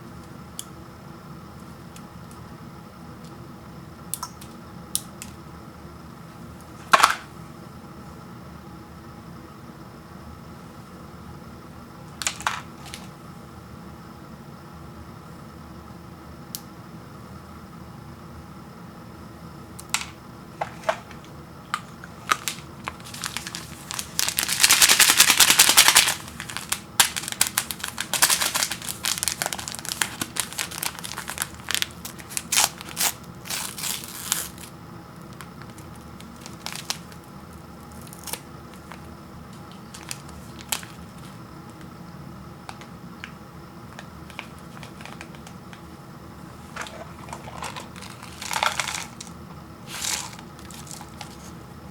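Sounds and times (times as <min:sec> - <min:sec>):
packaging crinkling: 0:20.0 - 0:41.9, 0:43.9 - 0:45.8, 0:46.7 - 0:51.6
packaging tearing: 0:22.2 - 0:34.7, 0:35.3 - 0:41.4, 0:44.3 - 0:45.5, 0:46.8 - 0:49.3, 0:49.9 - 0:51.6.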